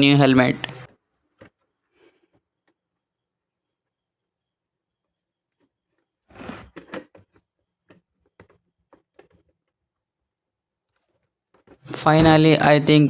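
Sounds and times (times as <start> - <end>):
plastic scraping on helmet: 0.8 - 3.0, 5.5 - 10.2, 10.8 - 11.9.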